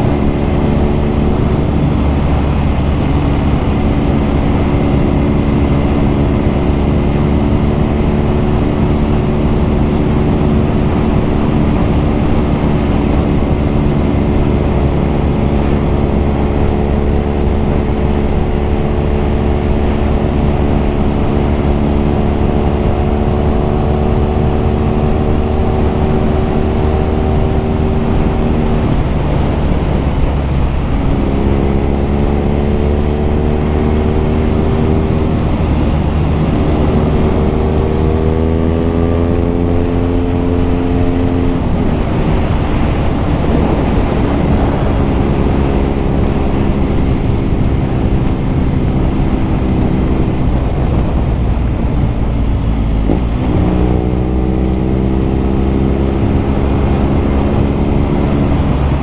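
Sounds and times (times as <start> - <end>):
motorcycle engine accelerating: 0.0 - 59.0.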